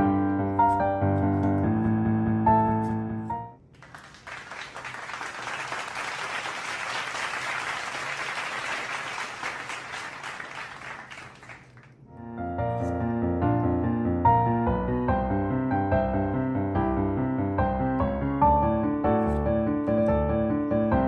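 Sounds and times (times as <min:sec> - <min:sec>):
piano music: 0:00.0 - 0:03.7, 0:12.1 - 0:21.0.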